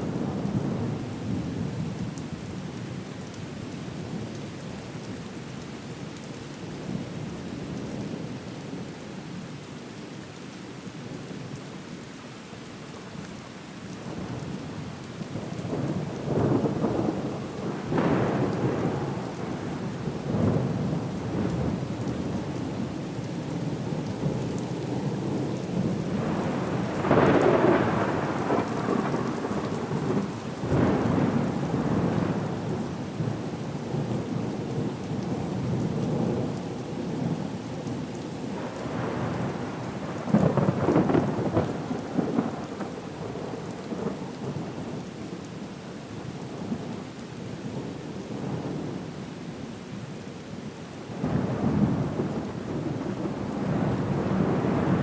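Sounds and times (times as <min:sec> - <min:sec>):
steady rain: 0:00.0 - 0:55.0
thunder rolling: 0:40.3 - 0:42.9.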